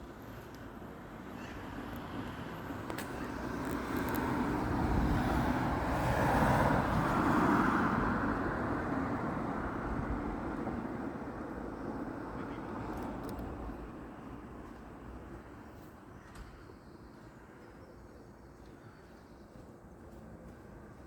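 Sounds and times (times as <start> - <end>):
road vehicle passing by: 2.4 - 11.3.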